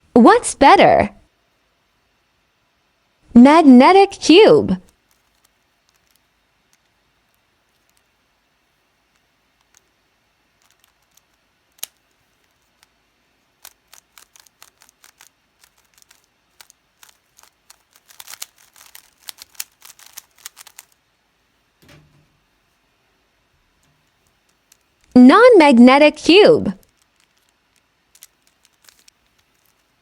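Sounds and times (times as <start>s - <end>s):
speed cube clicking: 9.1s - 9.9s, 10.6s - 12.9s, 13.6s - 21.0s, 26.8s - 30.0s.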